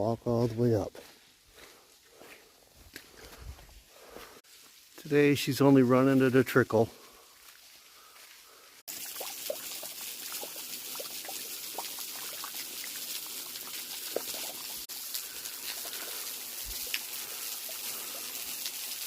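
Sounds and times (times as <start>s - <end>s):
waterfall trickling: 8.8s - 19.0s
water drips and plops: 8.9s - 19.0s.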